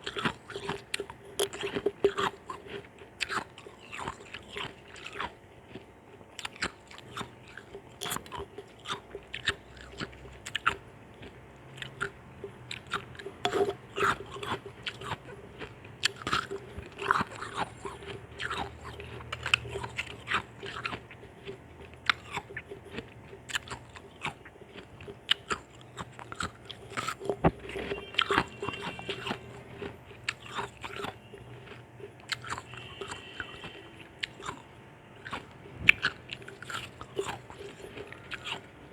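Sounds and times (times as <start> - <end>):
person crunching ice: 12.7 - 29.6, 35.2 - 38.6.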